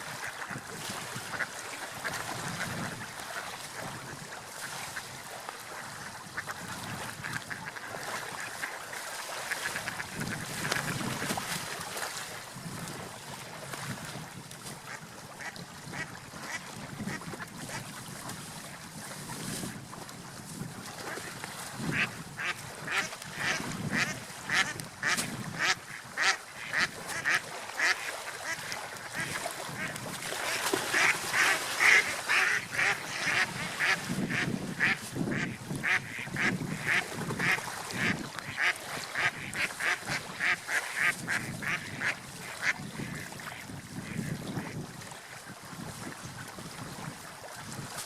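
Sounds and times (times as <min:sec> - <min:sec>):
ducks quacking: 0:06.3 - 0:08.8, 0:21.9 - 0:44.8.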